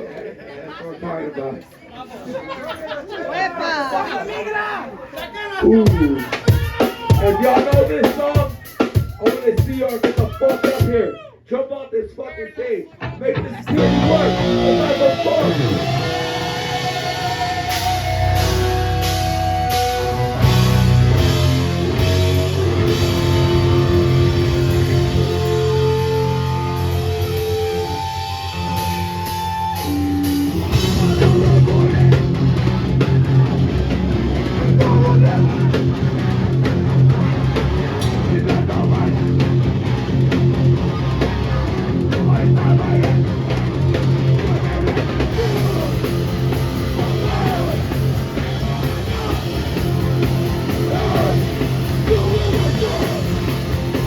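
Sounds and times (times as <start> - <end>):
live metal band playing: 5.7 - 11.0, 13.0 - 54.0
guitar sustained notes: 13.6 - 38.3.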